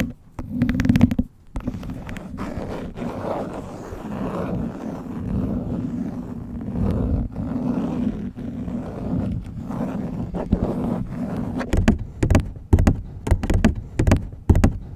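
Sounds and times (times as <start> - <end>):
fingernails scratching phone case: 0.0 - 14.9
fingernail taps: 11.6 - 14.9.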